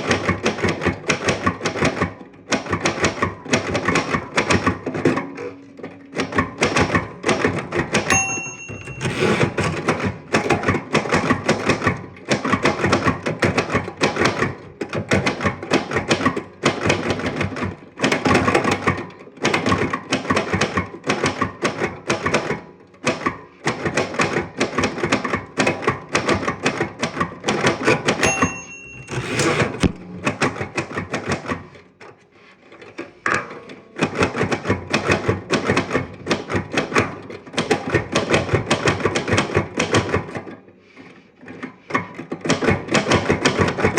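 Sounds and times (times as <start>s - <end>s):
typewriter keys clattering: 0.0s - 22.5s
typewriter margin bell: 6.2s - 10.2s, 28.1s - 29.9s.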